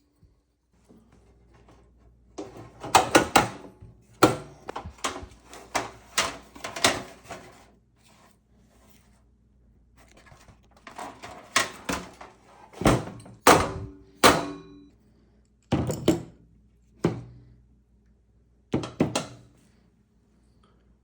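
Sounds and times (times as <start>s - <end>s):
metal stove parts clanking: 2.4s - 7.6s, 10.8s - 14.9s.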